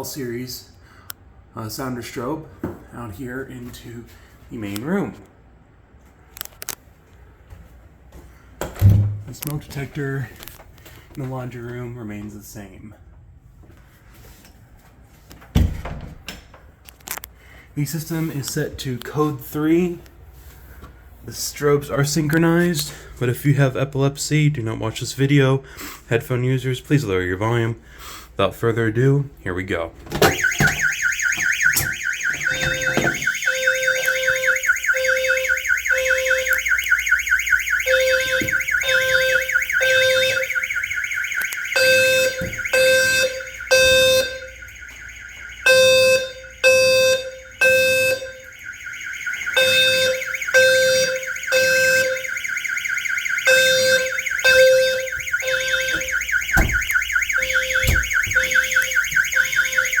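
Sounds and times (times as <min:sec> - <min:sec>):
fire alarm beeping in threes: 0:30.2 - 1:00.0
alarm horn rasping buzz: 0:30.4 - 1:00.0.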